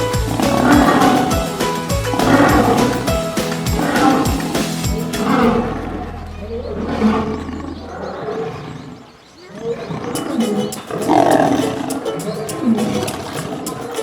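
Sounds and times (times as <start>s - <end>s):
lion roaring: 5.2s - 11.8s.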